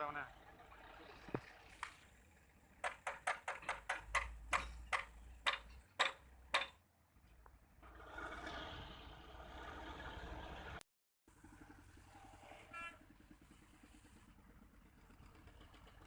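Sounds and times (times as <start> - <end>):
sharp knocks: 2.8 - 6.8.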